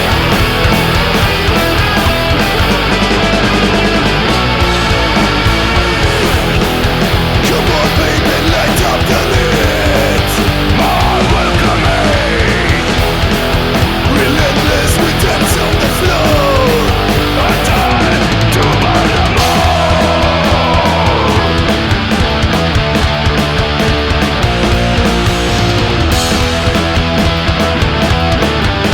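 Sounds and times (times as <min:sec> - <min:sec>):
punk rock band playing: 0:00.0 - 0:28.9.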